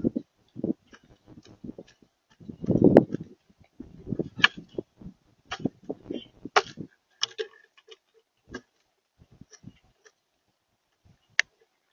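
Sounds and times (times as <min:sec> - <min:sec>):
low rustling: 0:00.0 - 0:07.0
sharp clicks: 0:00.9 - 0:03.4
animals tapping at bird feeder: 0:05.5 - 0:08.8.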